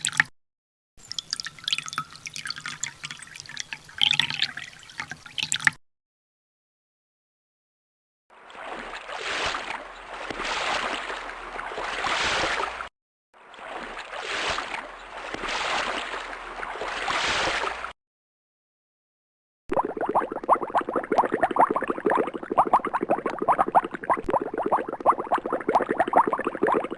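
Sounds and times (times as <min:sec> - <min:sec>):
water splashing and sloshing: 0:01.0 - 0:05.8, 0:08.3 - 0:18.0, 0:19.8 - 0:26.9.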